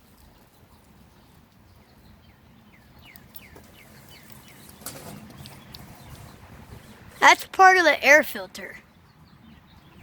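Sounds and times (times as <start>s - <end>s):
bird singing falling notes: 1.2s - 7.0s.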